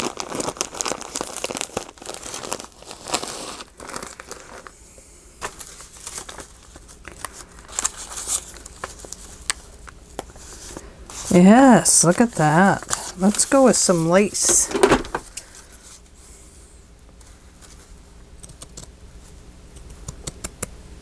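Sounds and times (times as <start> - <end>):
paper crinkling and rustling: 0.0 - 4.7, 5.4 - 11.4, 12.1 - 16.1.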